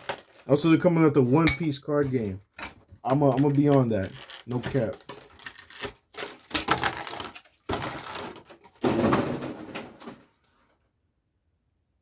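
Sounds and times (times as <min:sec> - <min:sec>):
packaging rustling and crinkling: 0:00.0 - 0:00.8, 0:02.1 - 0:08.9.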